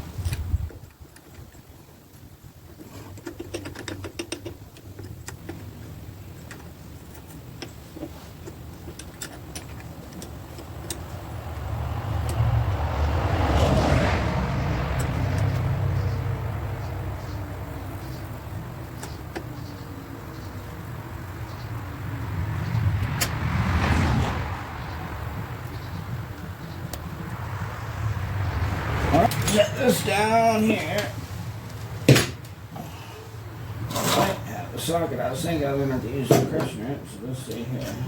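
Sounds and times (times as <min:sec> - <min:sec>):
vehicle passing rumble: 0:08.2 - 0:38.0.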